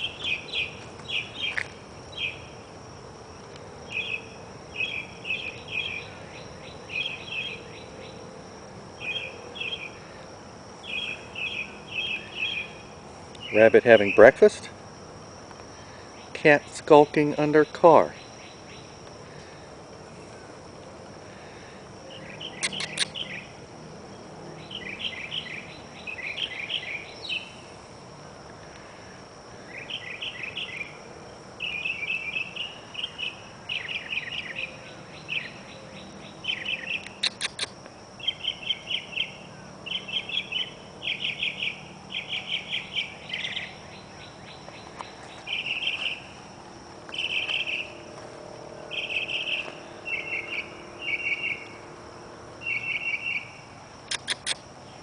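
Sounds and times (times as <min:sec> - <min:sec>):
night insects chirping in bursts: 0:00.0 - 0:55.0
sharp clicks: 0:22.6 - 0:23.1, 0:37.0 - 0:37.8, 0:54.1 - 0:54.6
high-pitched insect drone: 0:29.0 - 0:54.6.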